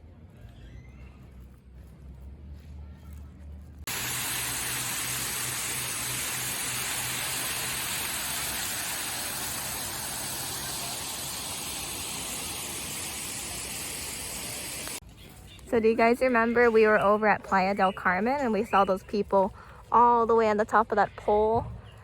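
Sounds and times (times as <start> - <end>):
water rushing: 3.9 - 15.0.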